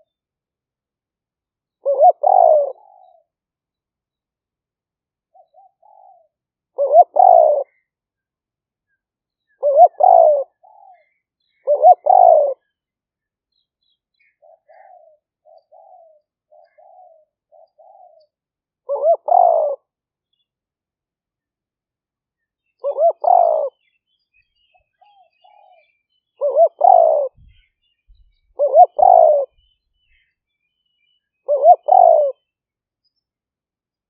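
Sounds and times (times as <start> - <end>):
dove cooing: 1.8 - 3.3, 5.3 - 7.8, 9.6 - 12.7, 14.4 - 18.3, 18.9 - 19.9, 22.8 - 23.8, 25.0 - 27.7, 28.6 - 29.6, 31.4 - 32.4.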